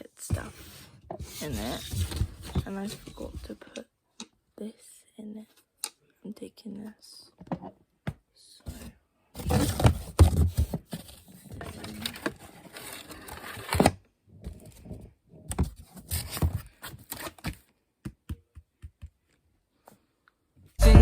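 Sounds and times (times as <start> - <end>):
things rattling in cardboard box: 1.2 - 3.5, 9.4 - 13.6.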